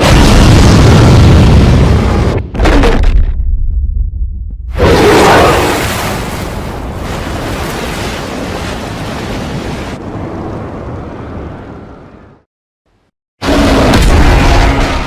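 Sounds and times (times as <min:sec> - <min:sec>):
huge explosion blast: 0:00.0 - 0:03.2.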